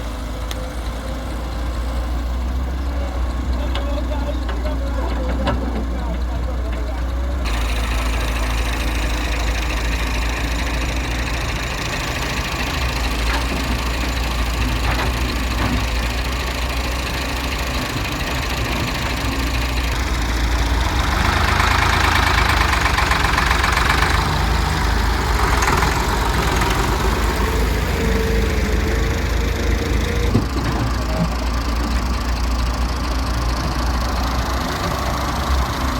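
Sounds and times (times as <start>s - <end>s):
diesel engine rumbling: 0.0s - 35.9s.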